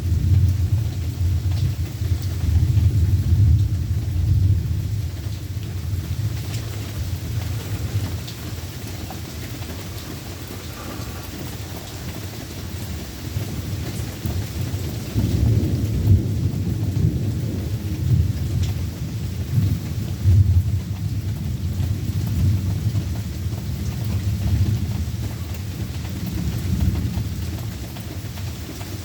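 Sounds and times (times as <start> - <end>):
rolling thunder: 0.0 - 27.8
rain falling: 0.0 - 29.0.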